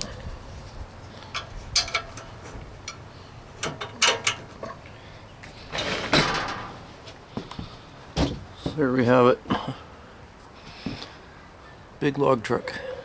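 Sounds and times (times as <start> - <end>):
scraping rustle: 0.0 - 8.8
light clicks and knocks: 1.1 - 8.8.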